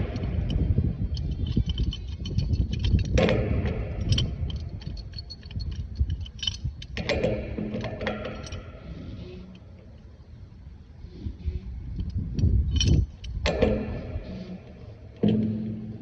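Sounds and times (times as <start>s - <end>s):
light metallic clicks and clinks: 0.0s - 10.1s, 12.0s - 14.2s
steady low rumble: 0.0s - 16.0s.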